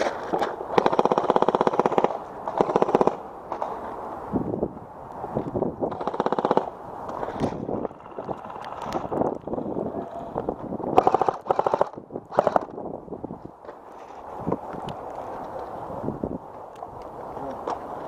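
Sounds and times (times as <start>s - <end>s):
airsoft guns firing bursts: 0.7s - 3.2s, 5.9s - 6.7s, 11.0s - 12.7s.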